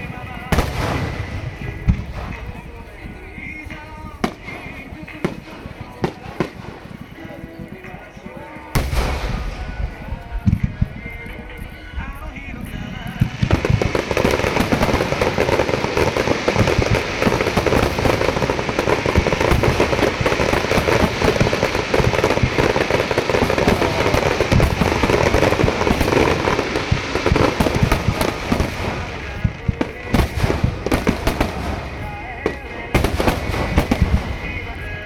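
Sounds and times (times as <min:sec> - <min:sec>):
fireworks bursting with crackle: 0:00.0 - 0:35.0.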